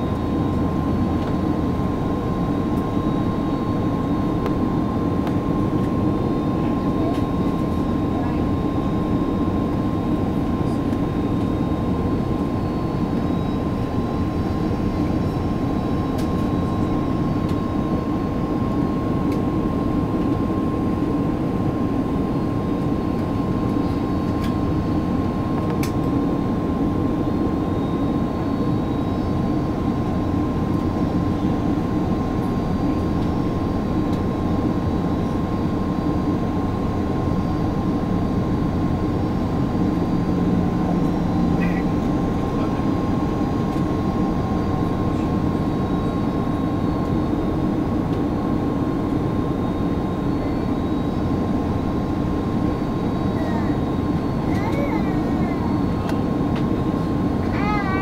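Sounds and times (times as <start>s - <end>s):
jet engines rumbling: 0.0s - 58.0s.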